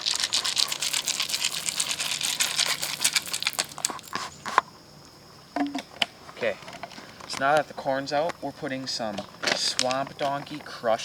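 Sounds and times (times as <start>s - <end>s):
corn kernels pouring and rattling: 0.0s - 4.4s.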